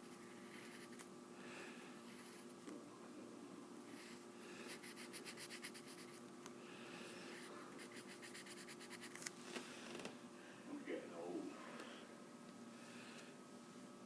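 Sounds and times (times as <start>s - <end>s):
drawing strokes scratching on paper: 0.0s - 1.0s, 3.9s - 6.2s, 7.3s - 9.3s
faint steady hum: 0.0s - 14.0s.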